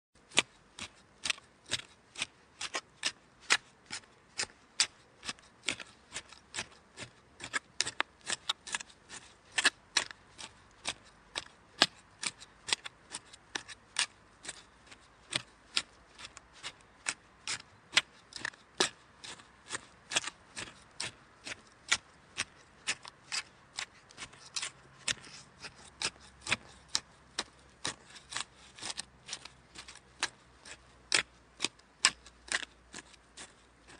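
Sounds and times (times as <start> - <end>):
garden hoe chopping soil: 0.2 - 33.9.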